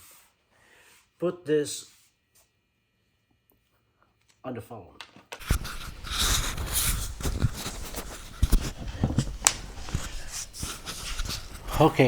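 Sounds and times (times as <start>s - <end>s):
handling rustling: 5.4s - 12.0s.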